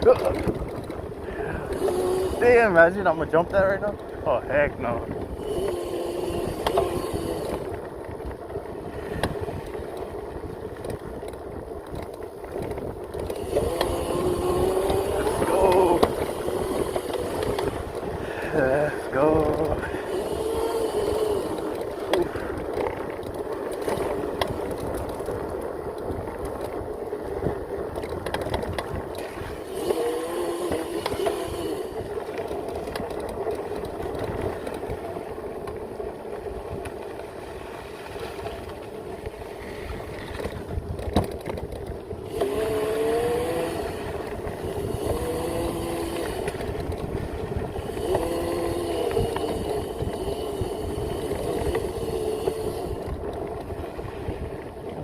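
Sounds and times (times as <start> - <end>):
steady rushing noise: 0.0 - 55.0
electric motor whine: 0.1 - 4.0, 4.7 - 8.2, 12.6 - 27.2, 28.3 - 36.1, 42.2 - 54.8.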